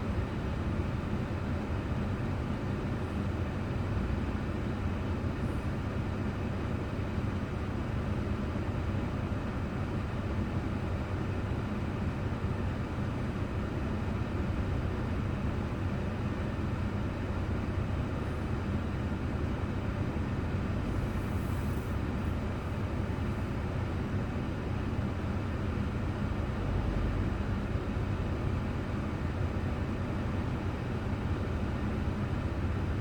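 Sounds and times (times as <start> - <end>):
car cabin road and engine hum: 19.1 - 24.1.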